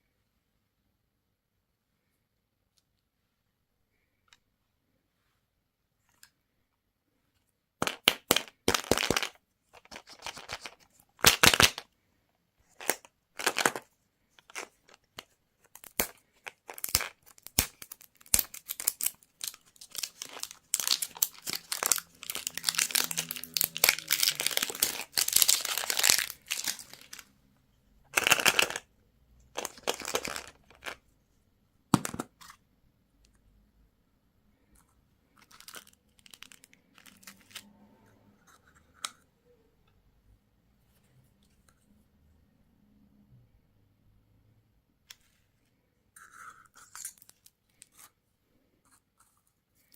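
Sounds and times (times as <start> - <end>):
wrappers crinkling and tearing: 16.7 - 27.2.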